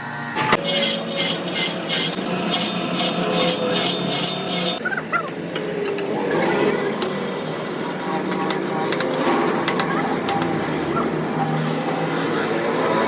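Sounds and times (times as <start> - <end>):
metal scraping and clinking: 0.6 - 4.8.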